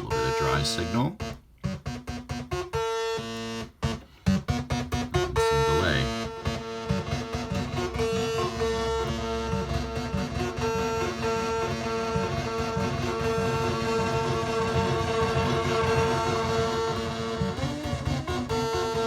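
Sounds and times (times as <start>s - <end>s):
repeating synth notes with echo: 6.1s - 19.0s.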